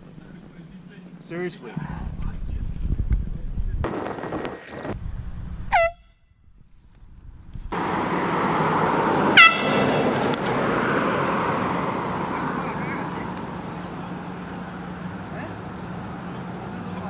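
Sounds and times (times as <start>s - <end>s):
outdoor background noise: 0.0s - 17.0s
handheld air horn toots: 5.7s - 6.2s.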